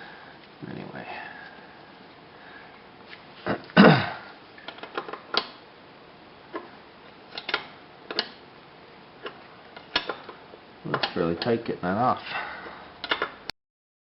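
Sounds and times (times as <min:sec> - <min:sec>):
wrench clicking and knocking: 0:13.0 - 0:13.4.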